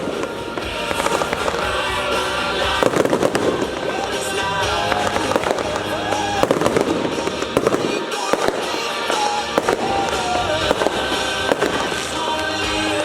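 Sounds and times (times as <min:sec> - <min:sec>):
fireworks bangs: 0:00.0 - 0:13.0
loud pop music: 0:00.0 - 0:13.0.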